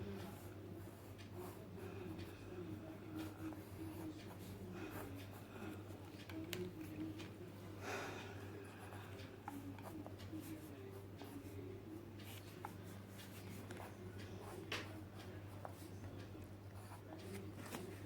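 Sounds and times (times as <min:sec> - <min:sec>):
pencil scratching on paper: 0:03.1 - 0:05.9, 0:08.7 - 0:11.6, 0:12.2 - 0:17.9.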